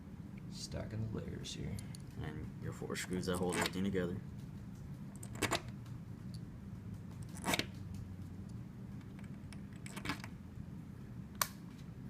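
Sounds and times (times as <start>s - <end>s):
steady low hum: 0.0s - 12.0s
small metal parts clicking and rattling: 9.0s - 10.3s.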